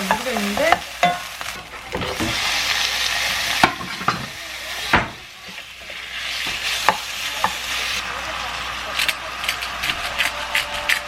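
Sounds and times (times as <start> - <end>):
food sizzling in a pan: 0.0 - 11.0.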